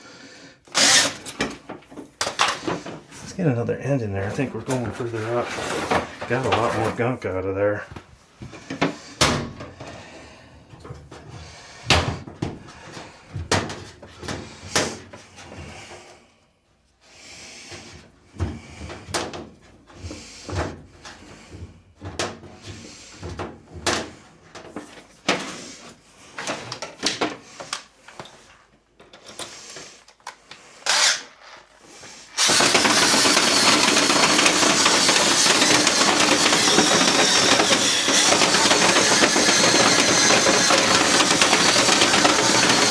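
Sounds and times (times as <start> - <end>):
drill whirring: 0.7 - 1.4, 30.8 - 31.6, 32.2 - 42.9
brush rods clicking and knocking: 32.4 - 42.9.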